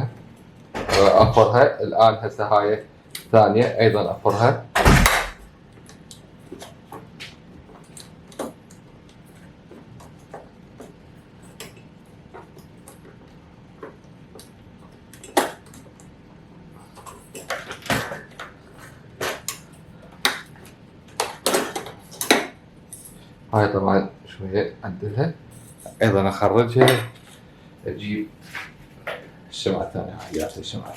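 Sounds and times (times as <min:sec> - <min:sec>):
louder knocks: 0:04.8 - 0:05.5.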